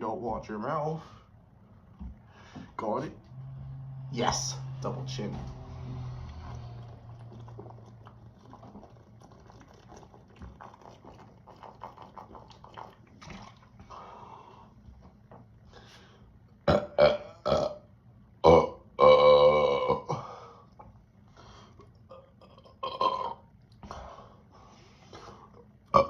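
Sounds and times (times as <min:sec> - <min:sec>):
faint gulps and clicks: 0:07.1 - 0:15.6, 0:20.6 - 0:24.2
man burping: 0:16.6 - 0:17.8, 0:18.4 - 0:20.6, 0:22.1 - 0:23.4.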